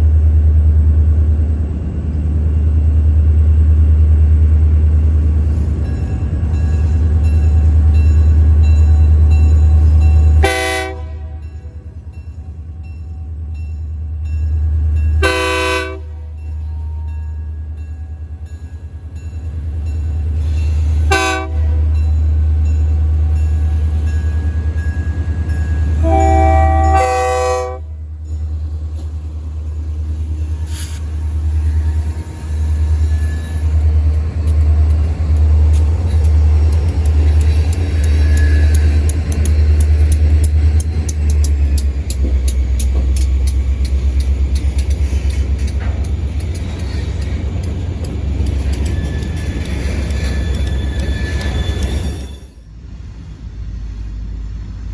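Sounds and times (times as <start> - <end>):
locomotive air horn blasts: 10.3 - 11.7, 15.2 - 17.1, 21.0 - 21.9, 26.0 - 28.0.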